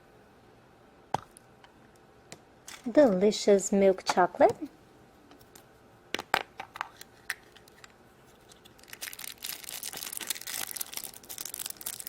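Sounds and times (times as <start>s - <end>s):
thin wrapper crinkling and tearing: 7.0s - 12.0s.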